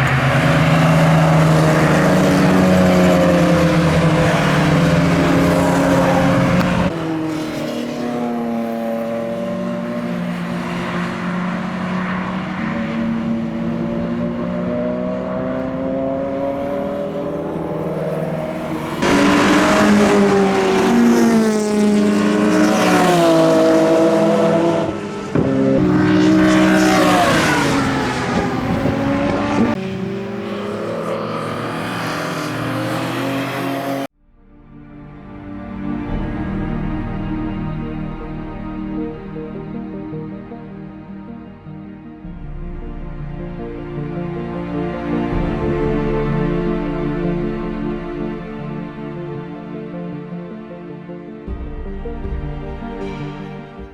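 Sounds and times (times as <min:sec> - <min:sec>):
car engine at full throttle: 0:00.0 - 0:34.8.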